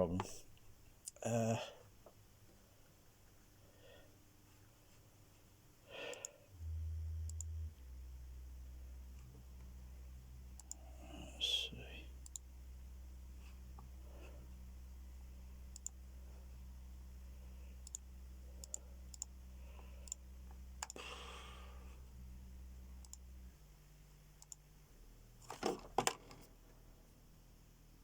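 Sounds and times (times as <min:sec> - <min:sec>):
bass shaker humming low tone: 0:06.5 - 0:25.4
light clicks: 0:10.6 - 0:10.8, 0:12.2 - 0:12.5, 0:15.7 - 0:16.0, 0:17.8 - 0:18.0, 0:20.0 - 0:21.0, 0:24.4 - 0:24.6.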